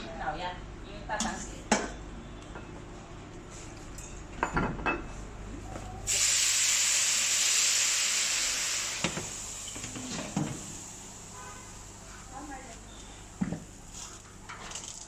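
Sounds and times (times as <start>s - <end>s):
water sizzling in hot pan: 6.1s - 11.0s.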